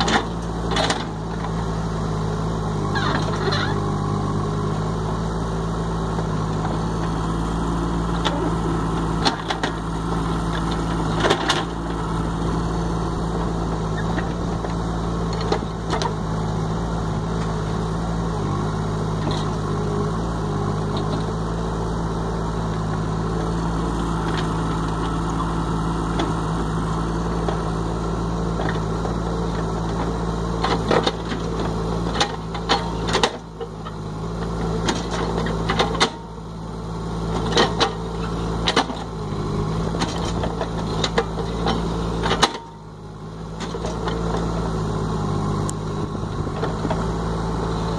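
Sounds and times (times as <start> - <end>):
engine running steadily: 0.0 - 47.9.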